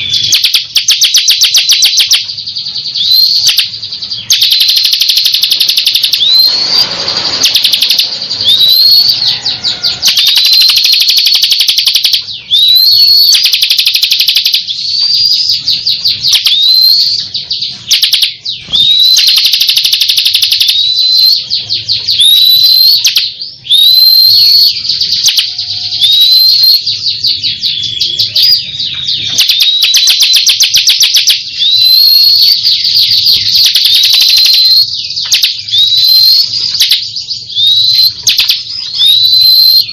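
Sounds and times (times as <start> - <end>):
bird rattling trills: 0.0 - 2.3, 2.9 - 27.3.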